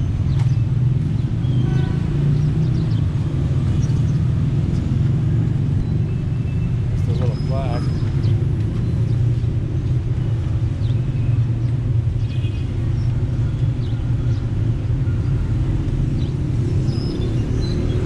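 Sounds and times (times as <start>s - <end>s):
street traffic rumble: 0.0s - 18.0s.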